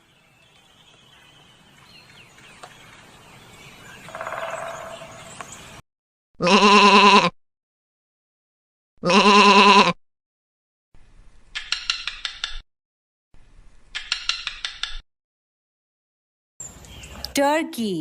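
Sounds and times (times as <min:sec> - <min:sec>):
hornbill wavering call: 0:03.9 - 0:05.3.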